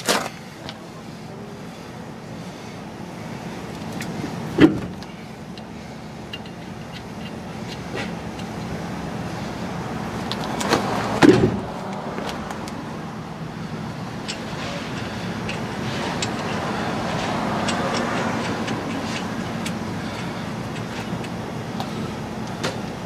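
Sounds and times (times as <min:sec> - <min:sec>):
truck cab road hum: 0:00.0 - 0:23.0
loud thud: 0:11.2 - 0:11.7.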